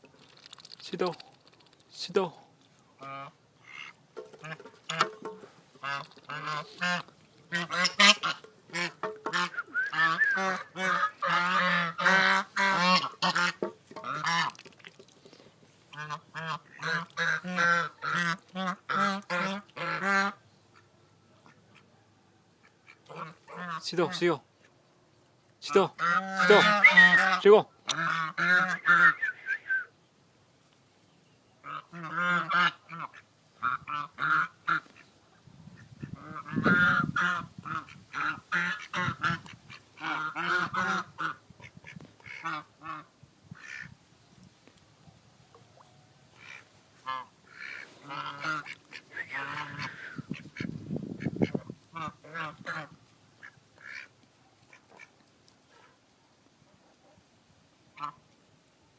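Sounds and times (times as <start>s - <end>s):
duck quacking: 3.0s - 14.6s, 15.9s - 21.9s, 22.8s - 24.3s, 25.7s - 29.6s, 31.6s - 35.1s, 36.0s - 43.9s, 46.4s - 54.1s, 58.0s - 58.2s
waterfowl honking: 3.0s - 14.6s, 15.9s - 20.9s, 26.0s - 29.7s, 31.6s - 35.1s, 36.0s - 43.9s, 46.4s - 54.1s, 58.0s - 58.2s.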